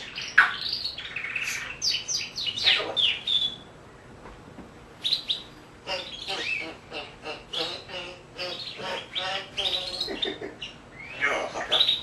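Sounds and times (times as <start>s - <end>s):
parrot chirping and whistling: 0.0s - 3.6s.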